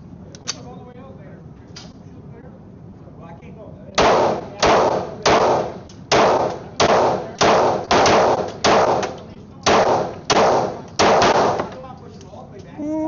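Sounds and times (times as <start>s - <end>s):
pistol shots with echo: 4.0s - 11.8s.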